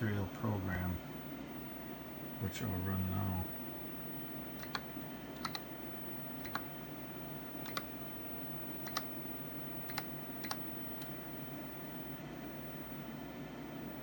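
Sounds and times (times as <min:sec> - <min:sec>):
computer fans humming: 0:00.0 - 0:14.0
keyboard keystrokes: 0:04.6 - 0:05.6, 0:06.4 - 0:06.7, 0:07.6 - 0:07.9, 0:08.8 - 0:09.1, 0:09.9 - 0:11.1.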